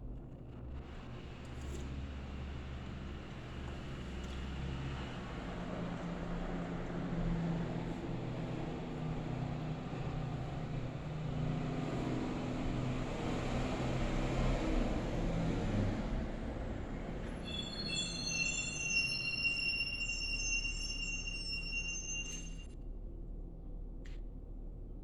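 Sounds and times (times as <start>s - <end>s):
passing vehicle engine hum: 1.8s - 17.6s
high ringing tones: 17.3s - 22.8s.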